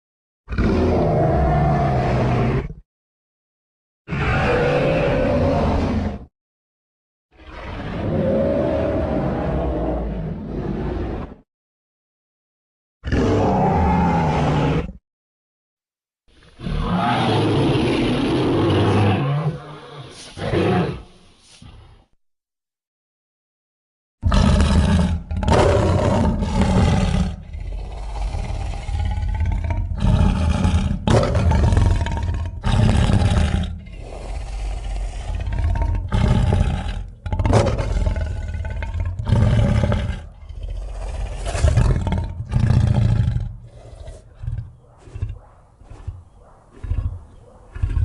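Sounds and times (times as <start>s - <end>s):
monster roars and shrieks: 0.5s - 2.8s, 4.1s - 6.3s, 7.4s - 11.4s, 13.0s - 15.0s, 16.6s - 21.0s, 24.2s - 44.6s.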